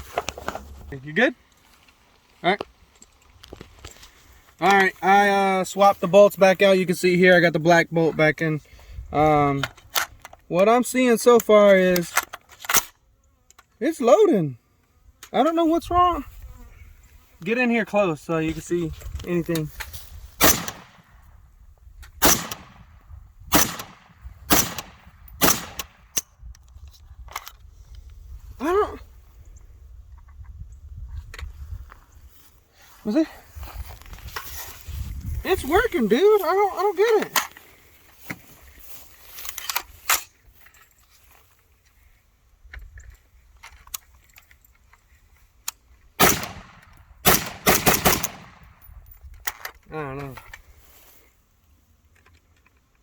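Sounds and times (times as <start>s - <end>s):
rifle shots with echo: 20.4s - 21.0s, 22.2s - 22.9s, 23.5s - 26.0s, 46.2s - 48.8s.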